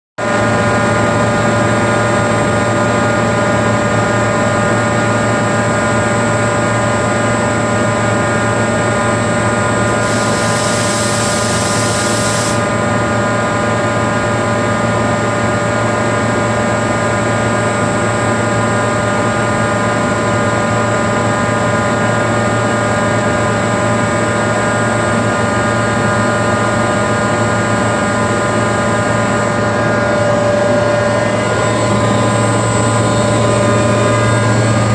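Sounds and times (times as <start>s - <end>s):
air compressor humming: 8.6s - 12.9s, 27.9s - 34.9s
air hiss: 9.9s - 12.7s.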